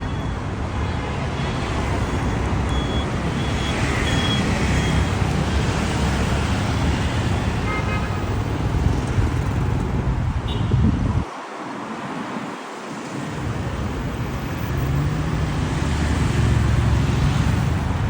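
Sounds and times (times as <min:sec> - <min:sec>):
loud outdoor rumbling: 0:00.0 - 0:11.2.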